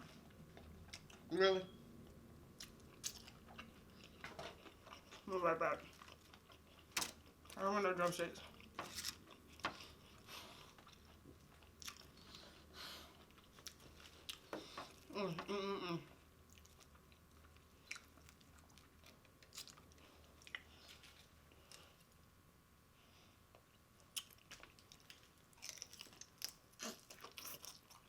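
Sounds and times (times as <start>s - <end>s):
chewing crunchy chicken: 8.4s - 15.1s, 16.5s - 22.0s, 23.5s - 28.0s.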